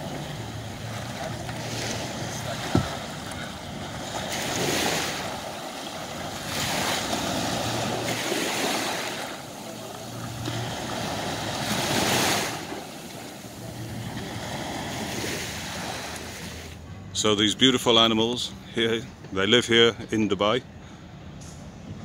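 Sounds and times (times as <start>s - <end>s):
small waves breaking on beach: 0.0s - 16.8s.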